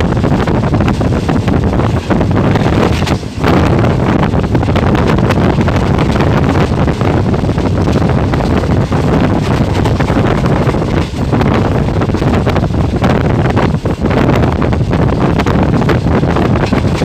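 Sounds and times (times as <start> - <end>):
rattling train wheels on rails: 0.0 - 17.0
wind buffeting microphone: 0.0 - 17.0.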